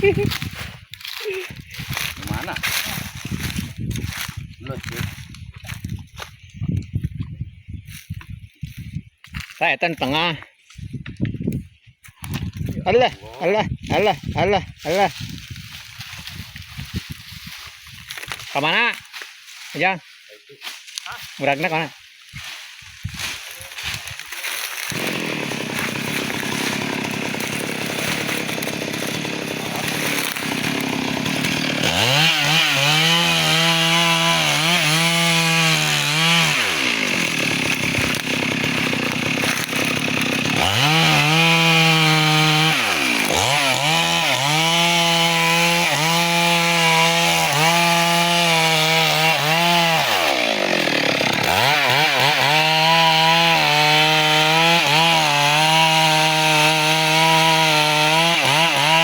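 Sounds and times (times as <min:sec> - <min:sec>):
chainsaw cutting wood: 0:00.0 - 0:06.4, 0:22.7 - 0:59.0.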